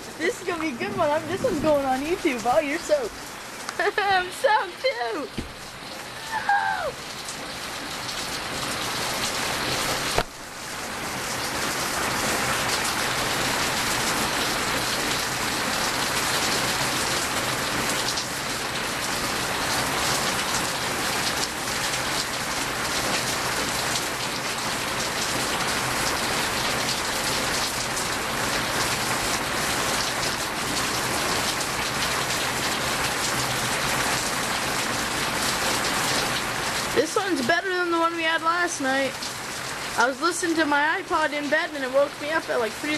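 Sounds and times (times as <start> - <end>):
heavy rain pouring: 0.0 - 42.9.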